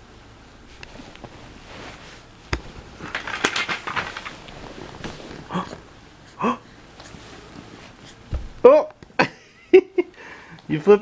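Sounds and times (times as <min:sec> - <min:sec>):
fabric rustling and crackling: 0:00.6 - 0:06.1.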